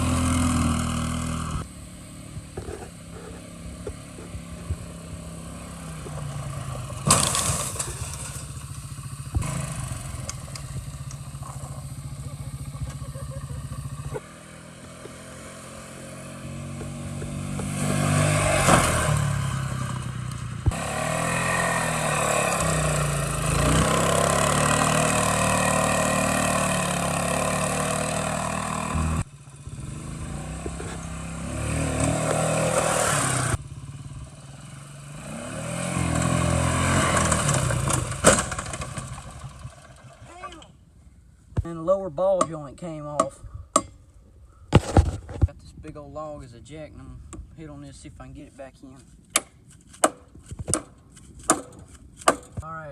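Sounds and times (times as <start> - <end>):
atv engine revving: 0.0 - 40.6.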